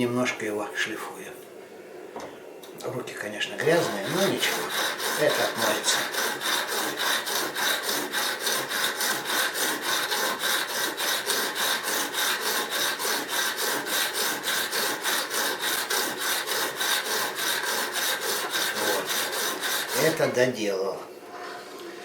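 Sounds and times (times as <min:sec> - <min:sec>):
sharpening bar rasping on blade: 0:03.7 - 0:20.3.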